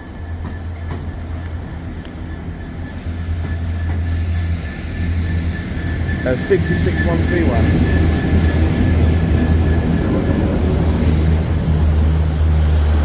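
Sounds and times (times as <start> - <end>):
diesel locomotive engine drone: 0.0 - 13.0.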